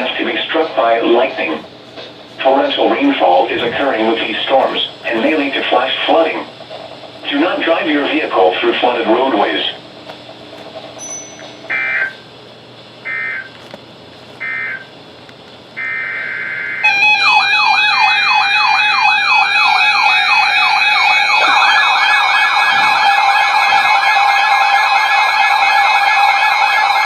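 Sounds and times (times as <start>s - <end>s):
electronic siren tones sweeping: 11.7s - 12.2s, 13.0s - 13.5s, 14.4s - 14.9s, 15.8s - 27.0s
steady tone: 15.8s - 26.0s.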